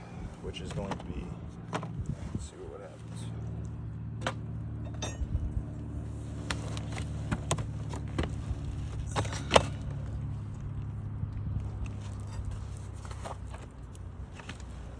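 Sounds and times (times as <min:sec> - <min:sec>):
steady low hum: 0:00.0 - 0:14.9
metal roofing tool clinking: 0:04.8 - 0:05.6.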